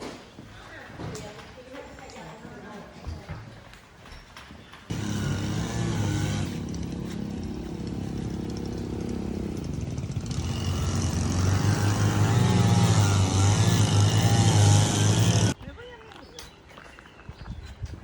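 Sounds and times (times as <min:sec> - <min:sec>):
motor engine humming: 0:04.9 - 0:15.6.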